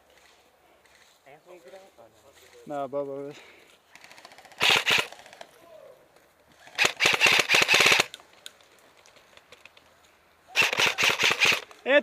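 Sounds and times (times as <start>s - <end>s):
airsoft gun firing full auto: 4.0s - 5.2s, 6.8s - 8.1s, 10.6s - 11.7s.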